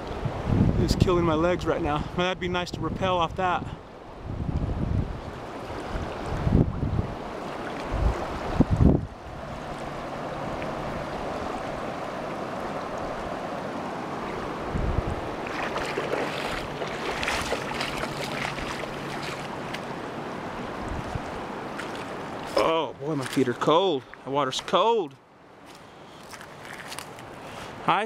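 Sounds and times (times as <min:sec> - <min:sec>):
wind buffeting microphone: 0:00.0 - 0:23.4
river water rushing: 0:03.8 - 0:28.0
splashy crackles: 0:15.4 - 0:19.9.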